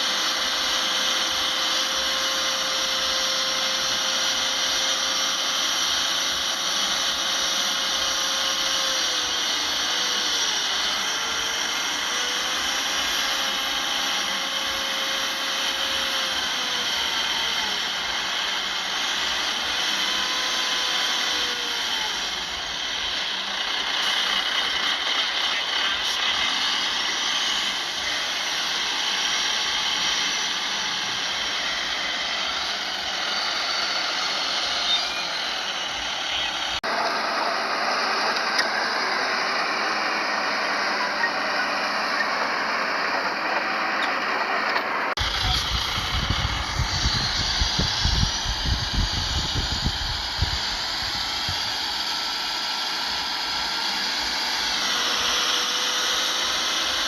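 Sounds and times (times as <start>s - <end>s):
heavy machinery diesel engines: 0.0s - 57.0s
heavy low rumble: 45.2s - 51.8s.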